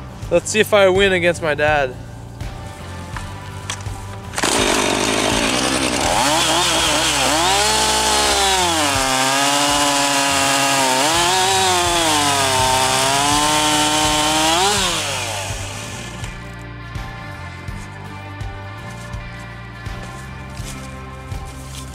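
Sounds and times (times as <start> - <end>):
chainsaw cutting log: 4.2 - 16.5.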